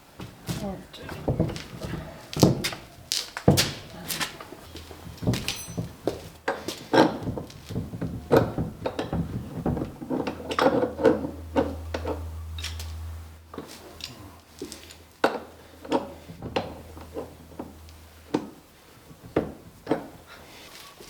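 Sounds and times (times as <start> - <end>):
metal fittings clinking on wood: 5.2 - 6.2.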